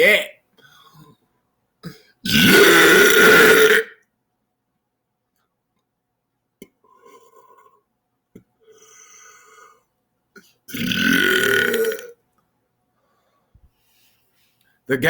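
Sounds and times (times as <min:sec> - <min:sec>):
man belching: 0:01.9 - 0:04.0, 0:10.7 - 0:12.2.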